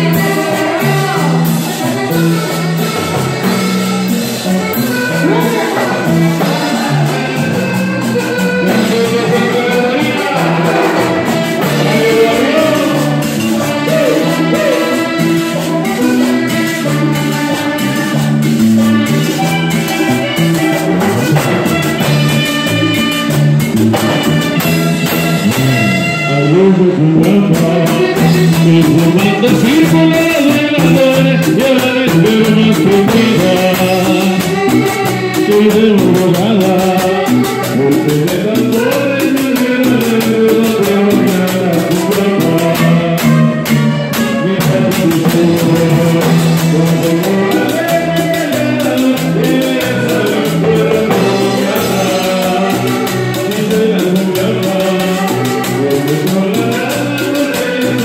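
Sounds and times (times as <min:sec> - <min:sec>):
person singing: 0:00.0 - 0:58.0
fast dance percussion: 0:02.5 - 0:26.1.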